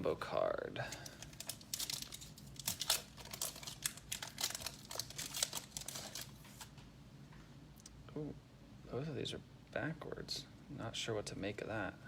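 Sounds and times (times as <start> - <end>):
wrapper tearing and crinkling: 1.0 - 6.7.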